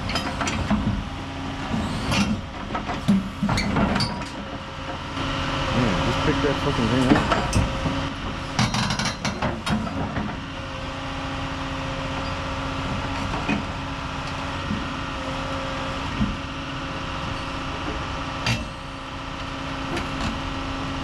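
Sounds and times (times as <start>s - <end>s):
heavy diesel engine running: 0.0s - 21.0s
sharp clanks and knocks: 1.7s - 5.0s, 7.0s - 10.4s.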